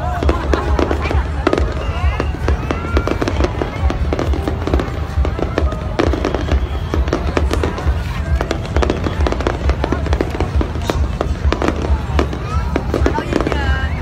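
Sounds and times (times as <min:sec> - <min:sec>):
fireworks bangs and crackles: 0:00.0 - 0:14.0.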